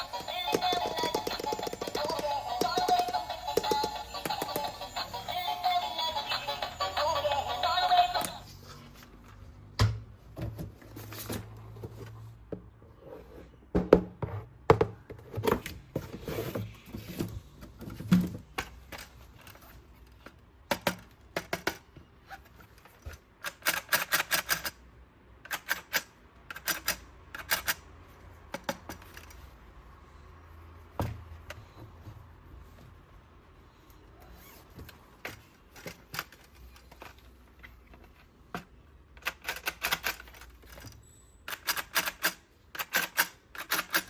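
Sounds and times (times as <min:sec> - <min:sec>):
plastic toys clicking and tapping: 0:00.0 - 0:08.5, 0:18.5 - 0:22.0, 0:22.6 - 0:24.8, 0:25.4 - 0:27.8, 0:35.2 - 0:44.0.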